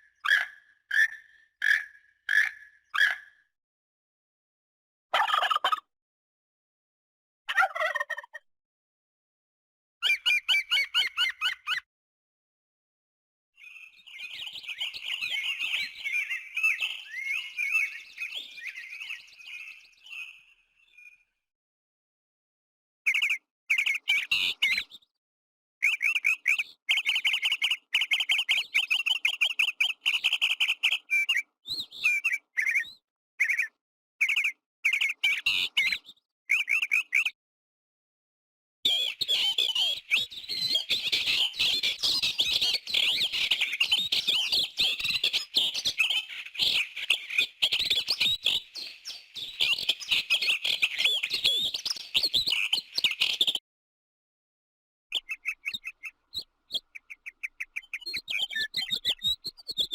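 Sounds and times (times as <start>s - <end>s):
small birds chirping: 0.0s - 3.5s, 10.0s - 11.9s, 13.6s - 21.4s, 23.1s - 25.2s, 25.8s - 37.4s, 38.8s - 53.6s, 55.1s - 59.9s.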